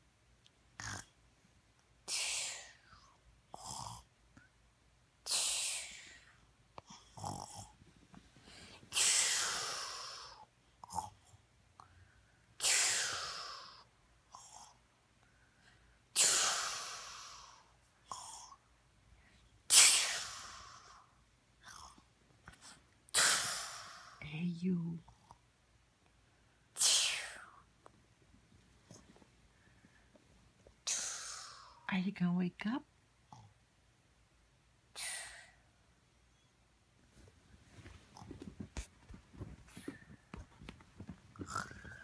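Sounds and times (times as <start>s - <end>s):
child snoring: 0.8s - 1.1s, 2.1s - 2.8s, 3.5s - 4.1s, 6.9s - 7.8s, 41.4s - 42.0s.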